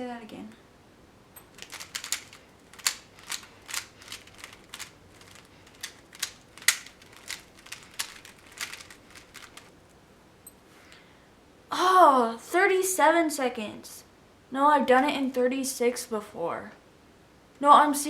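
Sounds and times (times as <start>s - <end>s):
puzzle cube clicking while twisted: 1.4s - 9.7s.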